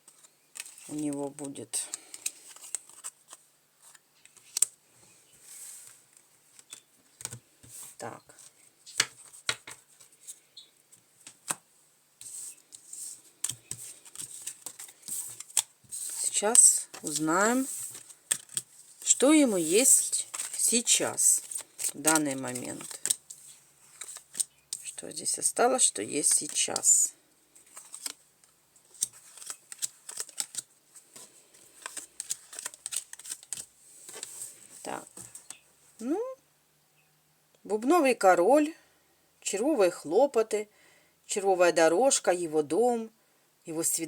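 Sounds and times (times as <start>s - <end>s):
cards sliding and clicking: 0.0s - 0.9s, 1.9s - 4.7s, 12.2s - 18.7s, 19.6s - 20.7s, 21.4s - 24.8s, 27.6s - 28.2s, 28.8s - 34.6s.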